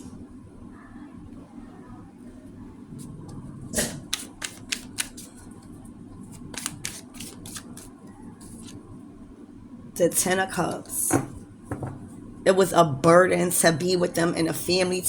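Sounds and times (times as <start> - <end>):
cards clicking and tapping: 4.1 - 5.3, 6.4 - 7.9.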